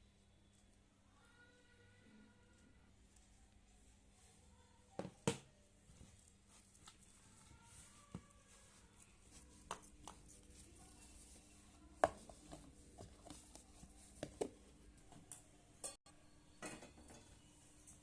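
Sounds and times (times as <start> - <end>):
utensils and dishes clinking: 15.8 - 18.0.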